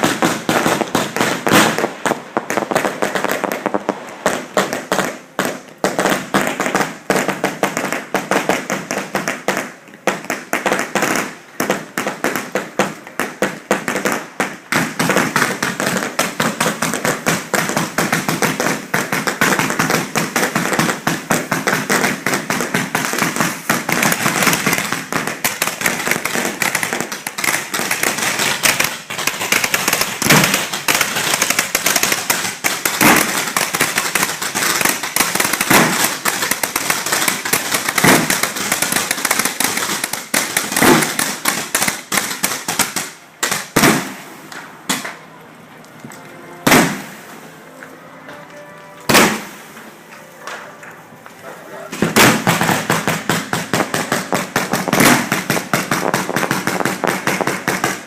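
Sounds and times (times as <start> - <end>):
firework bangs: 0.0 - 45.3, 46.0 - 47.4, 49.0 - 58.0
fireworks crackling: 0.0 - 58.0.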